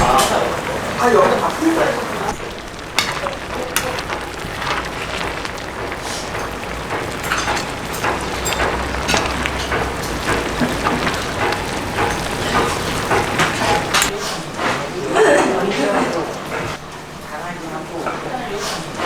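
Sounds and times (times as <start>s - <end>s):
crackling wood fire: 0.0s - 15.1s
stew sizzling and bubbling: 0.0s - 17.2s.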